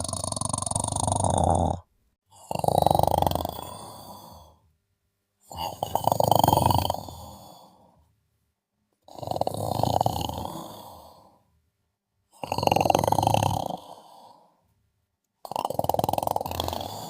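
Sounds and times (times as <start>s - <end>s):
person snoring rattling: 0.0s - 4.6s, 5.5s - 7.8s, 9.1s - 11.3s, 12.3s - 14.4s, 15.4s - 17.0s.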